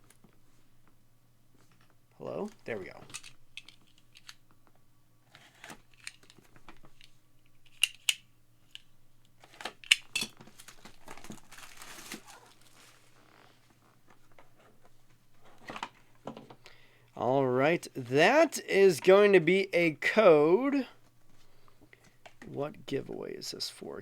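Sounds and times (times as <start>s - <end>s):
packaging crinkling and tearing: 9.4s - 13.4s.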